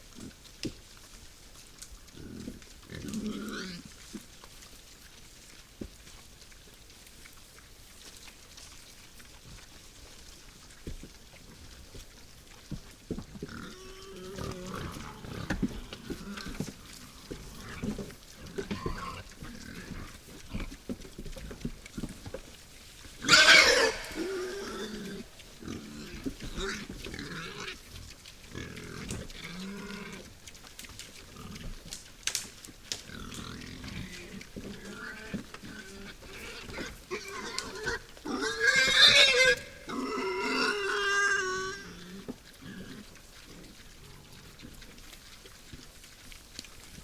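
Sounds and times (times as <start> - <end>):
wild boars grunting: 2.1 - 4.2, 12.6 - 22.5, 23.1 - 32.0, 32.9 - 45.0
harsh boar call: 23.2 - 27.8, 33.3 - 44.6.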